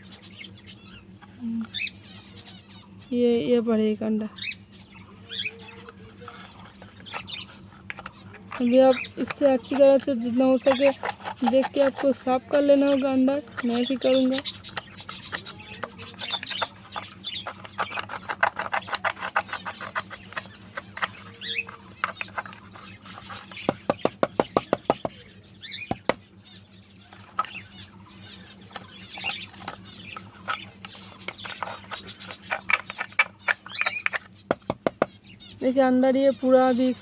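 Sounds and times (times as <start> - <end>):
small birds chirping: 0.0 - 37.0
scraping inside wooden box: 5.3 - 25.1, 28.4 - 34.6.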